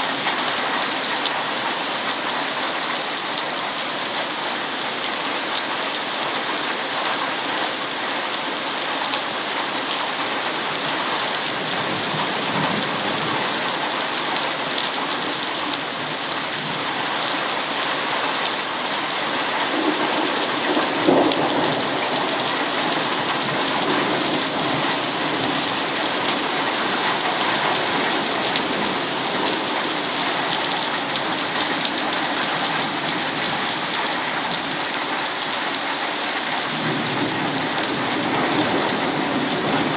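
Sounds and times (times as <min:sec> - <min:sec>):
heavy rain pouring: 0:00.0 - 0:39.9
thunder rumbling: 0:19.6 - 0:32.0, 0:36.7 - 0:39.9.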